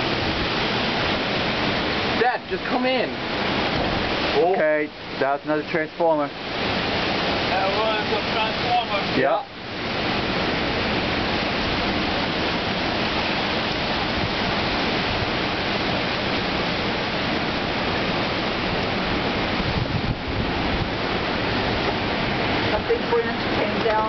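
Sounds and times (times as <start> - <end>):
storm wind blowing through trees: 0.0 - 24.0.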